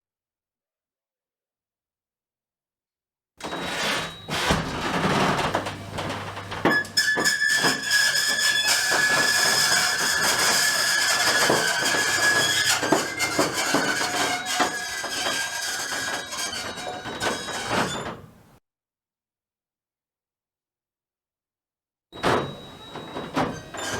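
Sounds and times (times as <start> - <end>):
garage door creaking and squealing: 3.4 - 18.5, 22.2 - 23.9.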